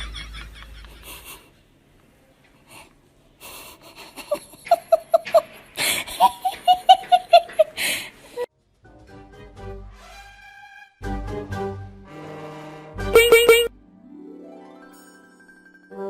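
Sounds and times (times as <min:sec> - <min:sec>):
person laughing wheezily: 0:03.4 - 0:08.1.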